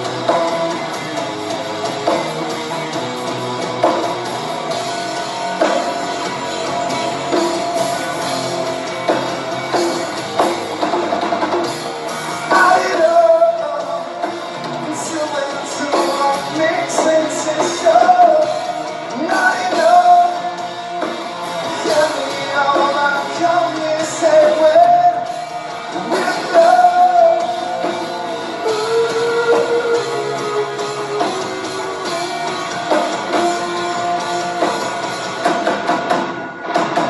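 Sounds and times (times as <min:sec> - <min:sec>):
rock band playing: 0:00.0 - 0:37.0
person singing: 0:12.3 - 0:20.8, 0:21.6 - 0:35.0.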